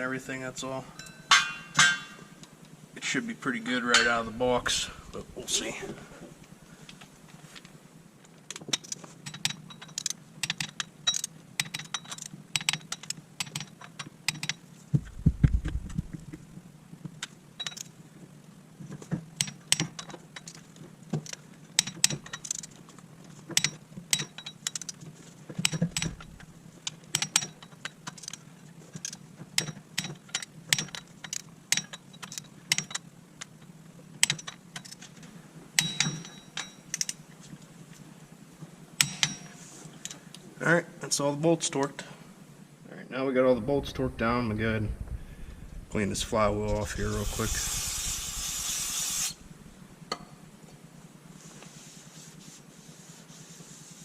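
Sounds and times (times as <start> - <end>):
metal tools clinking: 1.0 - 2.3, 3.9 - 5.0
dull low thump: 14.9 - 16.4, 43.6 - 46.9
ratchet wrench clicking: 46.9 - 49.5.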